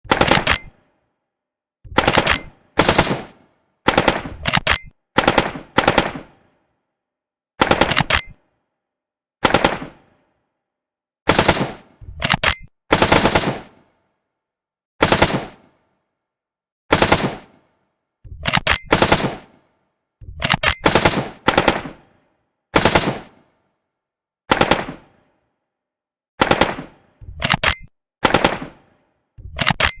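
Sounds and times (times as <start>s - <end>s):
automatic gunfire bursts: 0.1s - 0.8s, 2.0s - 6.4s, 7.6s - 8.4s, 9.4s - 10.1s, 11.3s - 13.8s, 15.0s - 15.6s, 16.9s - 17.6s, 18.5s - 19.6s, 20.4s - 22.1s, 22.8s - 23.4s, 24.5s - 25.1s, 26.4s - 27.6s, 28.2s - 28.9s.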